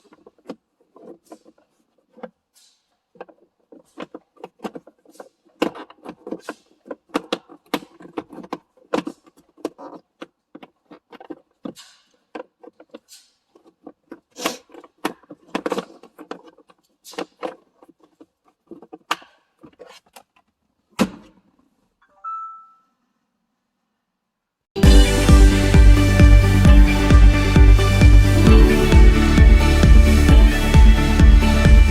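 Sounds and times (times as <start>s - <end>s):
plastic parts clicking and knocking: 0.0s - 21.7s
heavy thump: 24.8s - 31.9s
short electronic tone: 24.8s - 31.9s.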